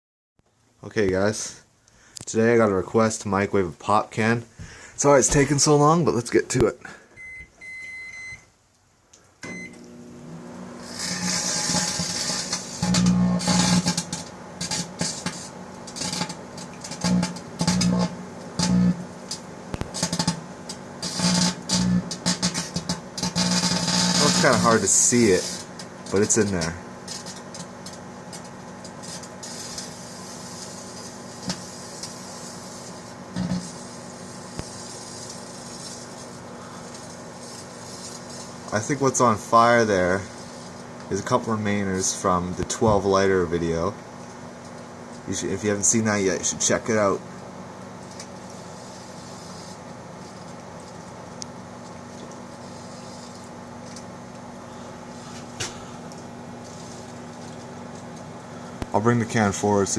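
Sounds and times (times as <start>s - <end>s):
microwave humming: 6.9s - 59.9s
microwave beep: 7.2s - 8.5s, 9.4s - 10.0s
electrical arcing crackle and buzz: 9.8s - 47.2s, 47.9s - 59.9s.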